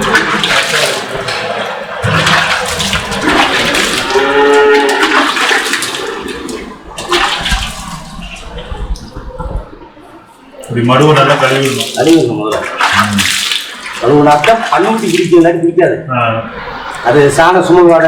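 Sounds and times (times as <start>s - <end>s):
running water splashing: 0.0s - 15.6s
cow mooing: 3.5s - 5.6s.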